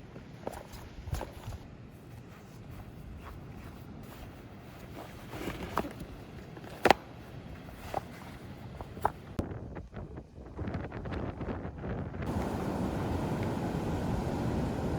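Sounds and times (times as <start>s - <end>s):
low background rush: 12.3s - 14.9s.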